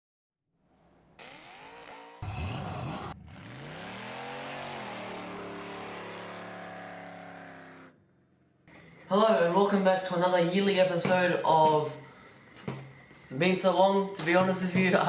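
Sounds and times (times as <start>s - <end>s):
car engine revving: 0.8s - 8.6s
loud rough engine blast: 1.1s - 8.4s.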